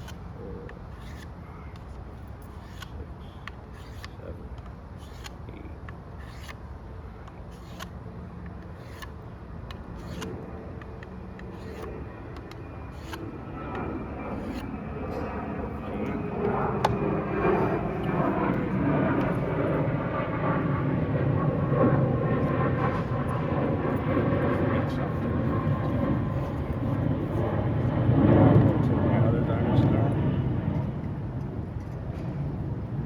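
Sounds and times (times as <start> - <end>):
aircraft engine drone: 0.0 - 33.0
knife scraping sharpening stone: 3.7 - 4.2, 6.2 - 6.6, 7.5 - 7.9, 8.7 - 9.1, 10.0 - 10.3, 11.5 - 11.9.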